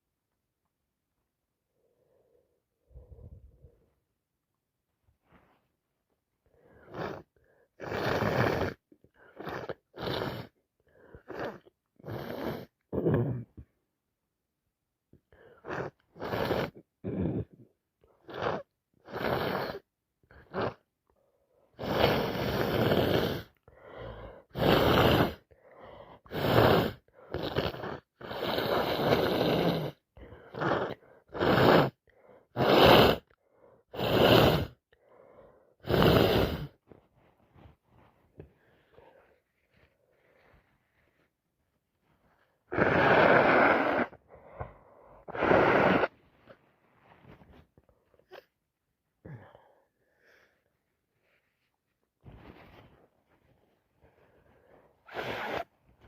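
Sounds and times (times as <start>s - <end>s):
person sniffing and blowing nose: 6.6s - 10.6s, 11.2s - 13.4s, 15.6s - 17.6s, 18.2s - 20.8s, 21.8s - 25.5s, 26.2s - 33.3s, 33.9s - 34.8s, 35.5s - 41.3s, 42.3s - 48.5s, 51.3s - 56.0s.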